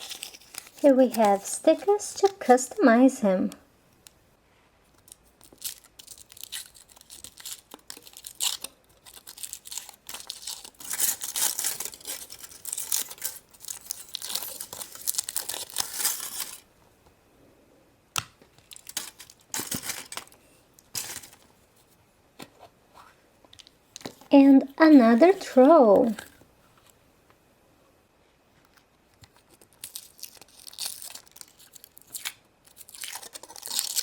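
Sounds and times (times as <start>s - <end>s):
foil wrapper crinkling: 0.0s - 2.5s, 5.0s - 16.7s, 18.6s - 21.5s, 29.2s - 34.0s.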